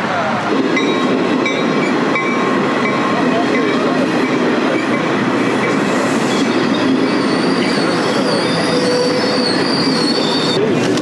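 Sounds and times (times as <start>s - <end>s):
train wheels rumbling on rail: 0.0s - 11.0s
high wheel squeal: 4.8s - 10.7s.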